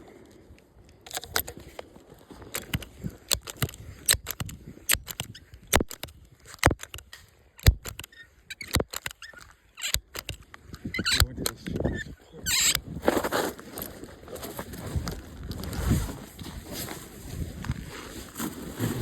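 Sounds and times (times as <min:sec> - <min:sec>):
crunching footsteps: 0:00.0 - 0:19.0.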